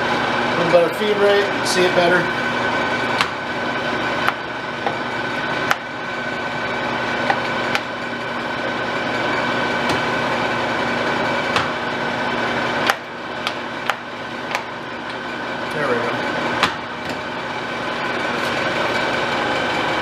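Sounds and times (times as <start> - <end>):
lathe gear whine and hum: 0.0 - 20.0.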